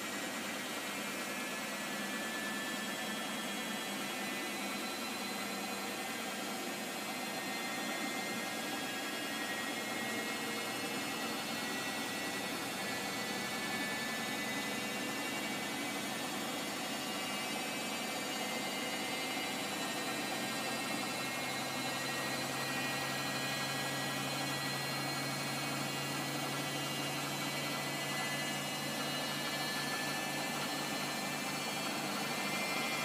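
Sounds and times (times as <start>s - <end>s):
washing machine spinning: 0.0s - 33.0s.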